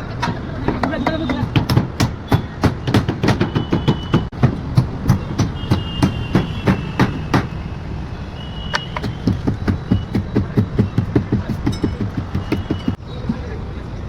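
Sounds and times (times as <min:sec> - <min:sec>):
hammering knocks: 0:00.2 - 0:07.6, 0:08.8 - 0:13.4.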